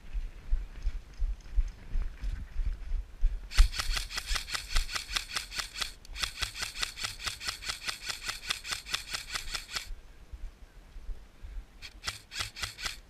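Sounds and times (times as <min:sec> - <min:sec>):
airsoft rifle full-auto bursts: 0:03.5 - 0:09.9, 0:11.8 - 0:13.0.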